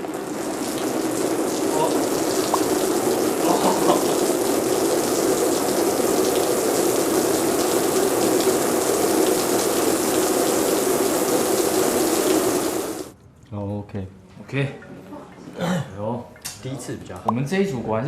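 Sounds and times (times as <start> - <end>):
shower water spraying: 0.0 - 13.1.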